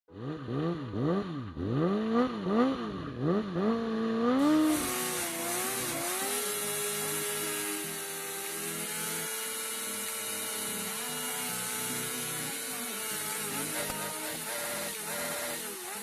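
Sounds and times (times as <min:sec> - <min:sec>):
motorcycle engine revving: 0:00.1 - 0:16.0
tire spinning hiss: 0:04.4 - 0:16.0.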